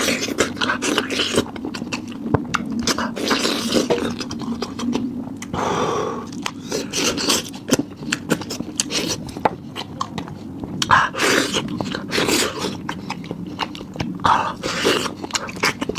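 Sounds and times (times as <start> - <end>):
wet chewing and biting: 0.0 - 5.6, 6.2 - 15.9.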